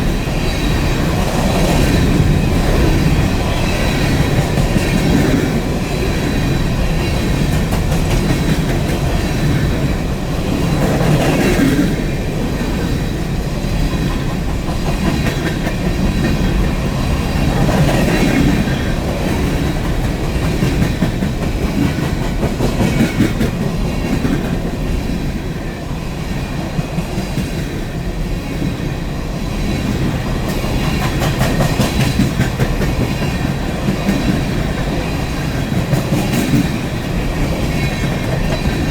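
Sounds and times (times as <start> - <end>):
train rumbling past: 0.0 - 38.9
wheels clacking over rail joints: 29.9 - 38.9.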